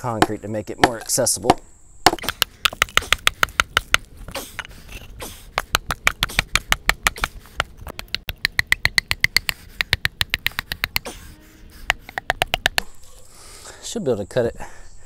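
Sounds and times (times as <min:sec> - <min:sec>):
hammer striking concrete: 0:00.0 - 0:04.0.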